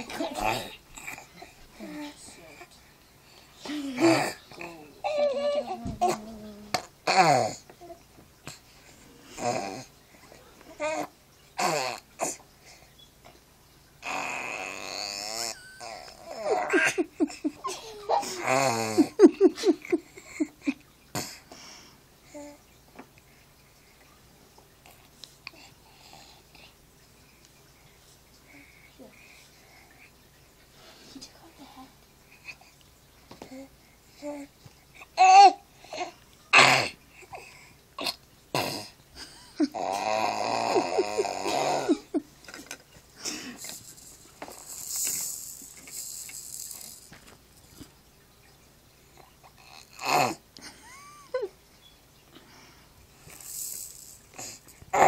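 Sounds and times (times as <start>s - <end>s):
baby vocalizing: 0.0s - 2.7s, 3.6s - 8.7s, 9.3s - 12.4s, 14.0s - 19.2s, 39.7s - 42.1s, 43.3s - 47.1s, 53.2s - 55.0s
baby grunting and squealing: 3.9s - 7.6s, 14.0s - 17.0s, 17.7s - 19.2s, 39.7s - 42.1s, 54.4s - 55.0s
baby grunting squeal: 14.0s - 16.9s
baby laughing: 15.4s - 20.8s, 39.6s - 42.2s.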